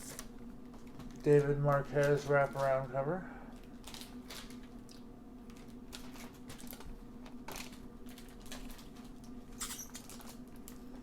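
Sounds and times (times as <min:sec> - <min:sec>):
steady low hum: 0:00.0 - 0:11.0
plastic and card crinkling: 0:00.1 - 0:11.0.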